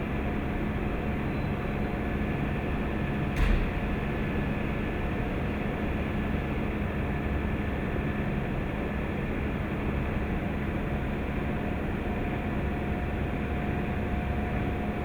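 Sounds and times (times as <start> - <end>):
sharp knock: 3.4 - 4.1.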